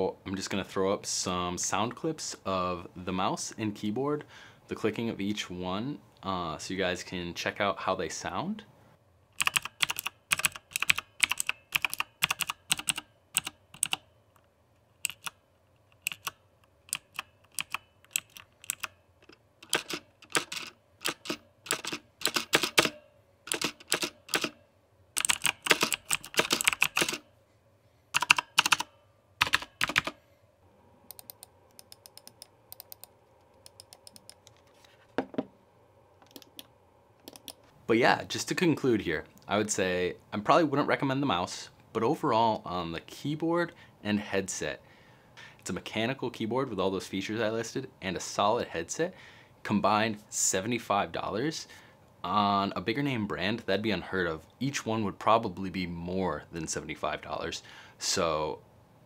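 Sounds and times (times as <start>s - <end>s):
mechanical keyboard typing clicks: 9.4s - 14.0s, 15.0s - 15.4s, 16.0s - 24.6s, 25.2s - 27.2s, 28.2s - 30.2s, 31.1s - 34.5s, 36.3s - 37.6s.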